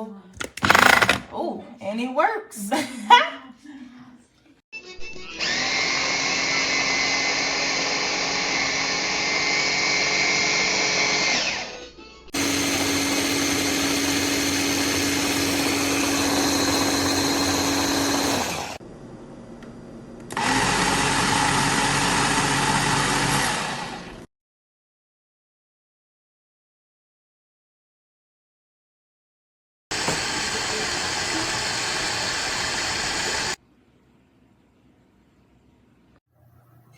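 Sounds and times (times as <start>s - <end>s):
food processor motor running: 0.5s - 1.3s, 5.4s - 11.7s, 12.4s - 18.8s, 20.3s - 24.3s, 29.9s - 33.6s.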